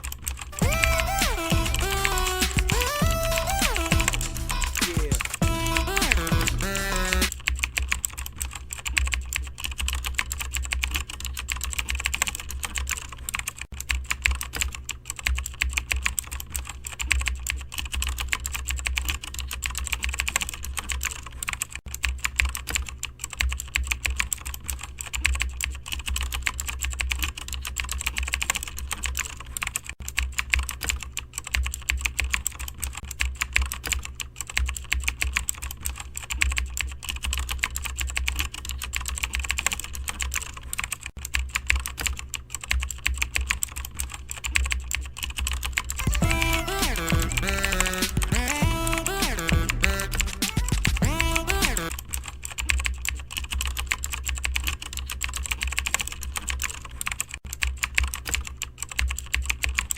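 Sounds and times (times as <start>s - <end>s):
fast keyboard typing: 0.0s - 59.9s
low hum: 46.0s - 51.9s.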